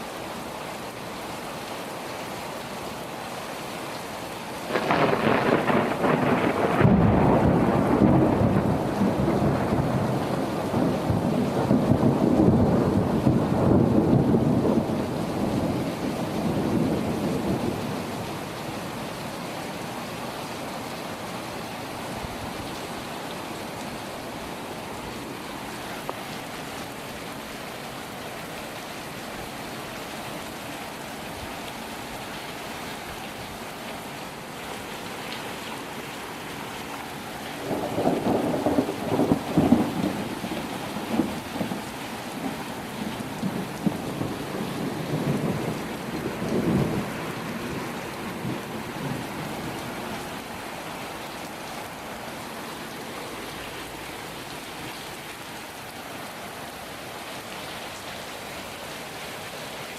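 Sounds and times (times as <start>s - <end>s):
steady rain falling: 0.0s - 59.9s
thunder rumbling and crackling: 4.7s - 17.9s, 37.6s - 49.4s.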